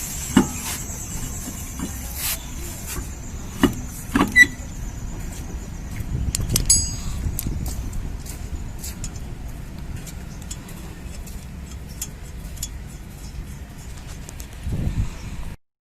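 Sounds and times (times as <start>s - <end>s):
car road rumble: 0.0s - 15.6s
light clicks and ticks: 5.2s - 14.7s.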